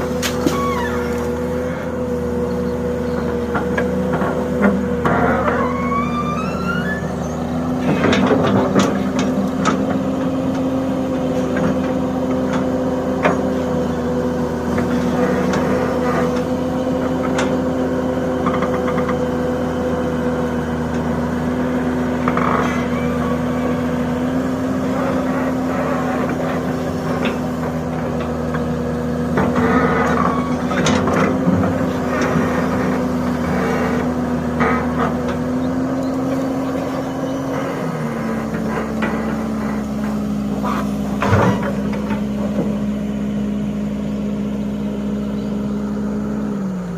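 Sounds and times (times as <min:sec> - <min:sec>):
excavator engine humming: 0:00.0 - 0:46.9
excavator bucket knocks and clanks: 0:41.2 - 0:42.8.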